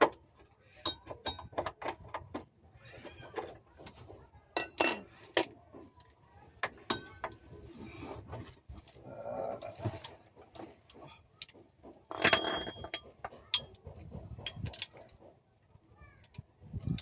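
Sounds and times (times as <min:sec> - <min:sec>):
metallic clicks and clanks of tools: 0:00.8 - 0:04.0, 0:04.6 - 0:07.4, 0:11.4 - 0:15.2.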